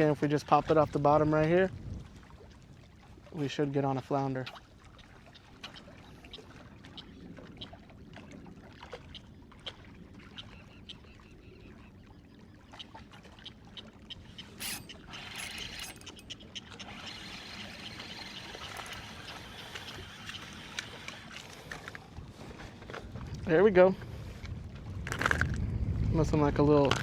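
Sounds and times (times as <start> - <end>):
faint water: 0.0 - 27.0
wind noise: 0.6 - 2.5, 22.1 - 27.0.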